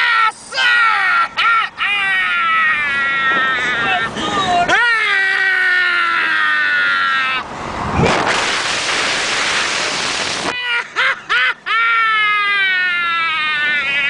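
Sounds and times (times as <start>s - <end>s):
long wailing cries: 0.0s - 7.5s, 10.6s - 14.0s
rushing noise: 7.4s - 10.6s.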